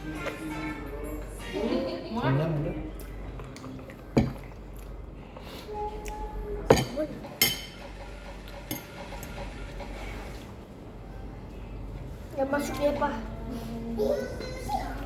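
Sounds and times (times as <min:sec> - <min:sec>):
tableware clinking: 0:06.7 - 0:08.0, 0:08.6 - 0:09.0.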